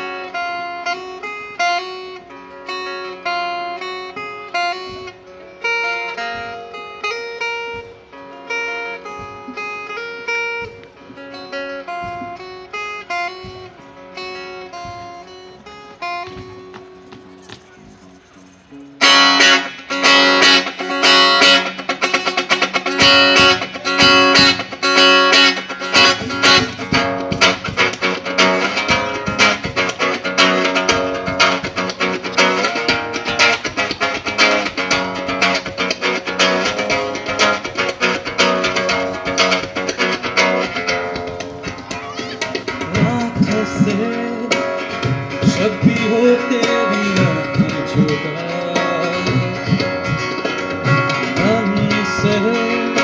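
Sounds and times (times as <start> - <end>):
strummed guitar chords: 0.0 - 53.0
bass notes: 17.9 - 52.6.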